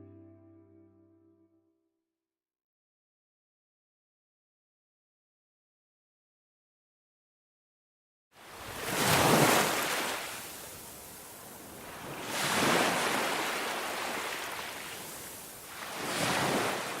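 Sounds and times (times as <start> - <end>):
ocean waves washing in: 8.4 - 17.0.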